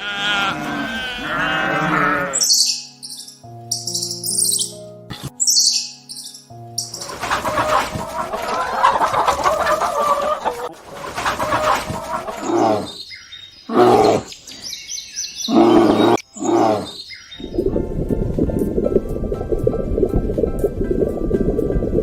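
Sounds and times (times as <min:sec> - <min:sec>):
farm animals calling: 0:00.0 - 0:02.8, 0:07.0 - 0:14.6, 0:15.4 - 0:17.5.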